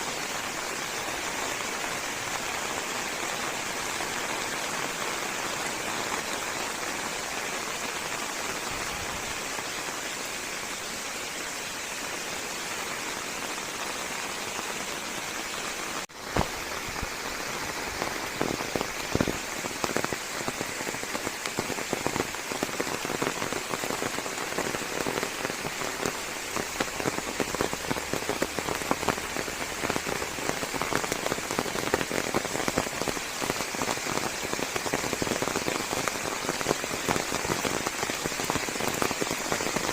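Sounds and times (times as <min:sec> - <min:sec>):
rain hissing: 0:00.0 - 0:39.9
close drips and splats: 0:16.0 - 0:39.9.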